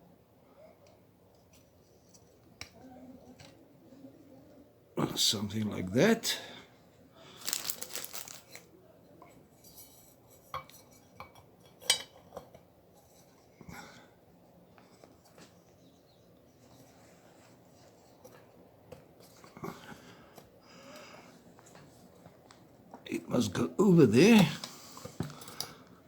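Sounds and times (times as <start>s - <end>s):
plastic and metal parts clinking: 7.4s - 8.6s.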